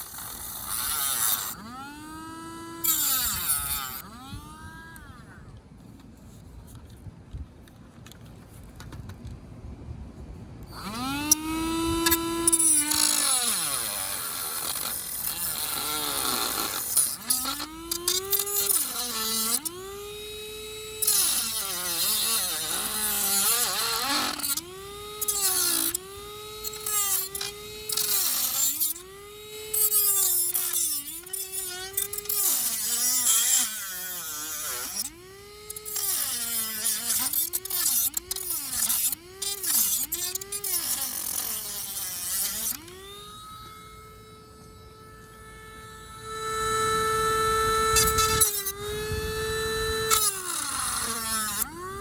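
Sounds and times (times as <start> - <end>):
rotary tool whining: 0.0 - 9.5, 10.1 - 52.0.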